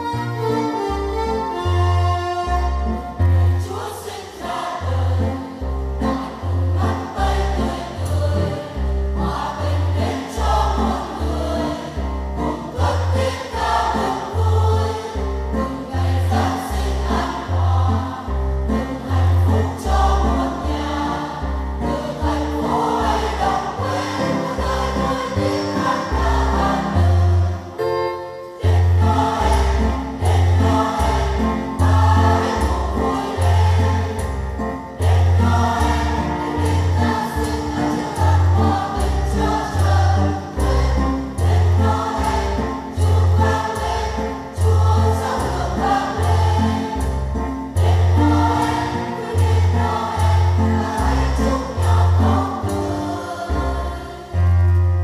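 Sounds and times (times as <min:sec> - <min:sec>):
choir singing: 0:02.7 - 0:54.9
stepping bass line: 0:28.6 - 0:52.8.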